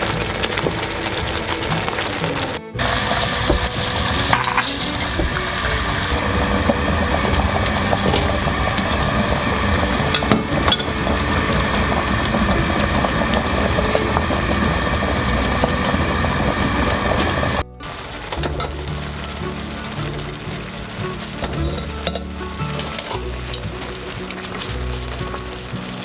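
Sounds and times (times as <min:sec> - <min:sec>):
steady noisy hiss: 0:00.0 - 0:26.0
utensil clinking against pan: 0:03.2 - 0:06.0, 0:21.1 - 0:26.0.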